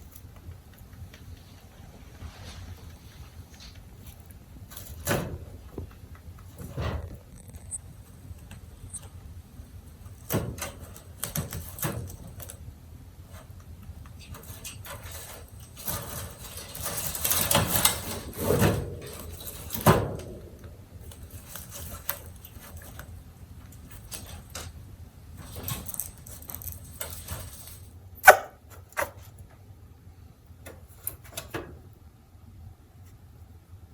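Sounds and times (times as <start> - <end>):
rabbit scratching hay mat: 0.0 - 31.9.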